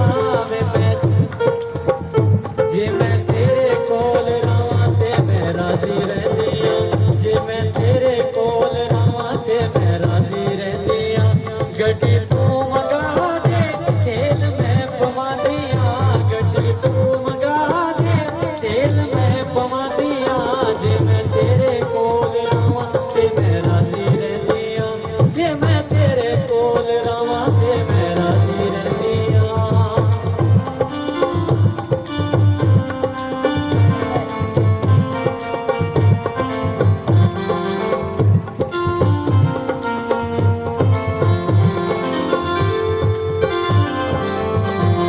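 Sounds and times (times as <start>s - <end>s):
hand drum beat: 0.0s - 12.8s, 27.4s - 45.0s
wavering lead melody: 30.2s - 45.0s.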